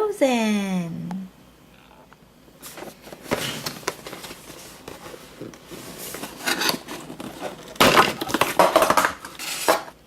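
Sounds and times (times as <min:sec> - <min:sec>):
plastic packaging rustling and scraping: 0:02.6 - 0:10.0.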